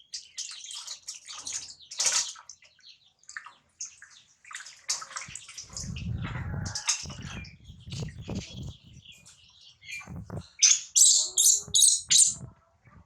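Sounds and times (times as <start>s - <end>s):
water splashing in a bath: 0.3s - 7.3s
low rumble: 5.7s - 9.1s.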